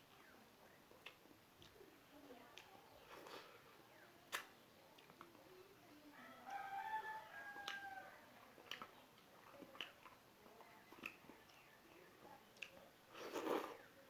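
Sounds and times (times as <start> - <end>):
rooster crowing: 6.2 - 8.2.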